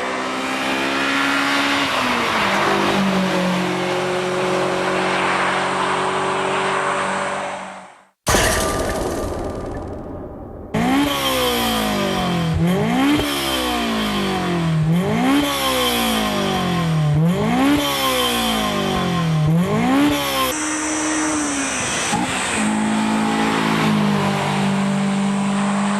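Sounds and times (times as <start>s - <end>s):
car engine revving: 10.0s - 25.9s.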